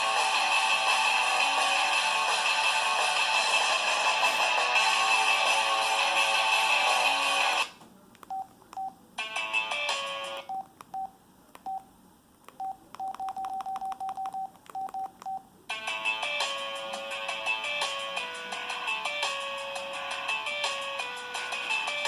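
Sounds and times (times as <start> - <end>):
phone keypad beeps: 8.3 - 9.0, 10.5 - 11.9, 12.5 - 15.4.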